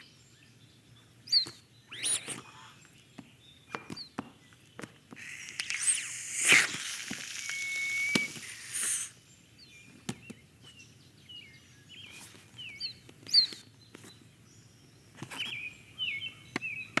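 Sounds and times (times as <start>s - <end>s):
birds chirping: 0.0s - 17.0s
loud hissing: 1.9s - 2.6s, 5.2s - 9.2s
sharp clicks: 5.2s - 9.1s.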